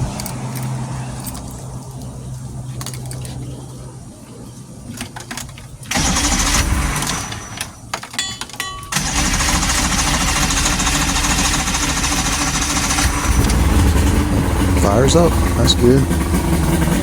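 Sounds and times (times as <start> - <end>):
boat engine starting and running: 5.3 - 7.8, 8.9 - 17.0.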